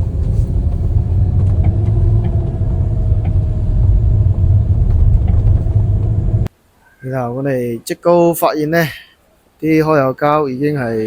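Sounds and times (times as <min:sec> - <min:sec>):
car tyres and engine rumble: 0:00.0 - 0:06.6.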